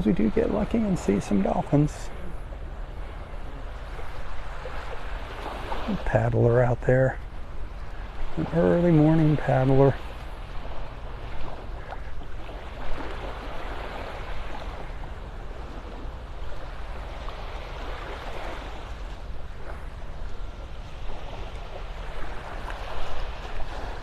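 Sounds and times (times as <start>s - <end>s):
steady low rumble: 0.0s - 17.8s.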